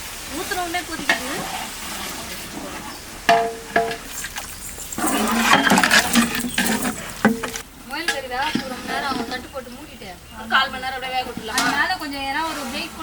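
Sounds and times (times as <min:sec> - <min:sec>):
meat sizzling in oil: 0:00.0 - 0:07.6
ladle scraping pot: 0:01.1 - 0:09.7
ladle clanking on pot: 0:03.3 - 0:09.4.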